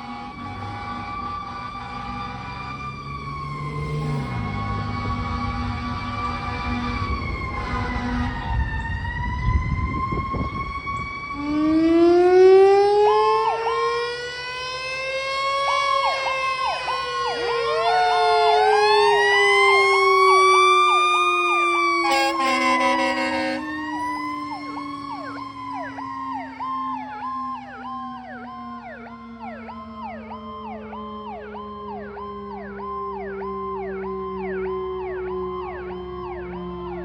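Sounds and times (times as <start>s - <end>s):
truck engine low rumble: 0.0s - 11.4s
electronic siren wailing and yelping: 10.3s - 27.4s
air horn blast: 21.9s - 23.9s.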